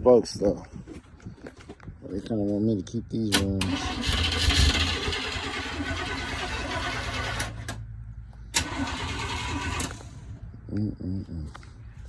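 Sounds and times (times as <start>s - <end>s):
car engine idling: 3.6s - 10.8s.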